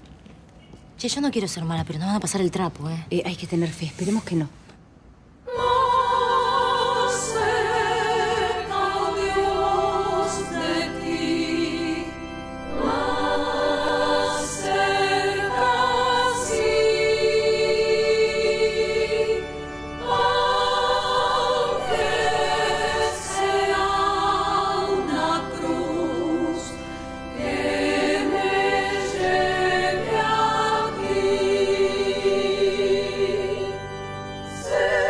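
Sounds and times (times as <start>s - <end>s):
choir singing a hymn: 5.5s - 35.0s.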